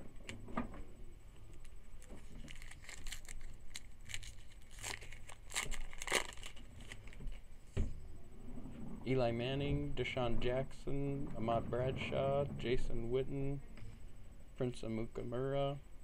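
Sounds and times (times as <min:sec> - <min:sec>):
wrapper tearing and crinkling: 0:01.6 - 0:07.4.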